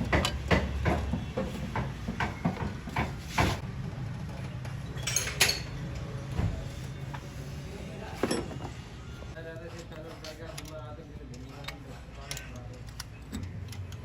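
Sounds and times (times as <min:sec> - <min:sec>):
metal tools clinking: 0:04.8 - 0:06.0, 0:08.2 - 0:08.7, 0:09.6 - 0:14.0.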